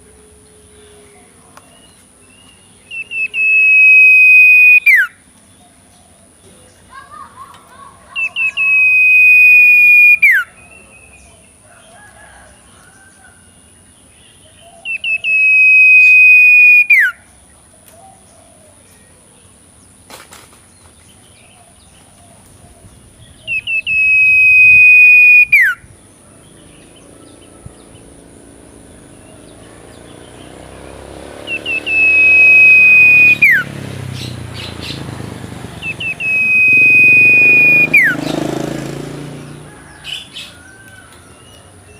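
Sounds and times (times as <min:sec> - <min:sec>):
young bird whistled calls: 0:02.8 - 0:05.2, 0:08.2 - 0:10.8, 0:14.8 - 0:17.2, 0:23.3 - 0:25.9, 0:31.4 - 0:33.7, 0:35.8 - 0:38.4
rustling background noise: 0:17.5 - 0:23.4.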